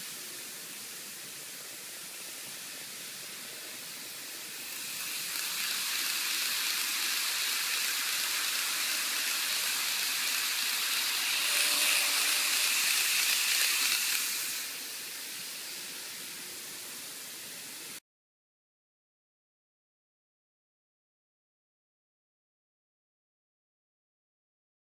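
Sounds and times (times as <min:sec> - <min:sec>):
model train wheels and motor rattling: 0:00.0 - 0:18.0.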